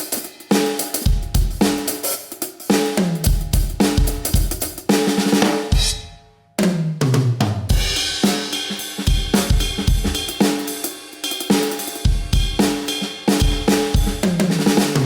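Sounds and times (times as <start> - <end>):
electronic drum kit groove: 0.0 - 6.2, 7.0 - 15.0.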